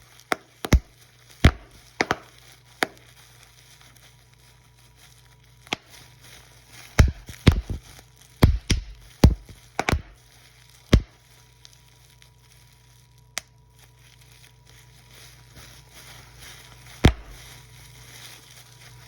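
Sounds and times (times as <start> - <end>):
sharp knocks and thumps: 7.0 - 7.8, 8.4 - 10.2, 17.0 - 17.4.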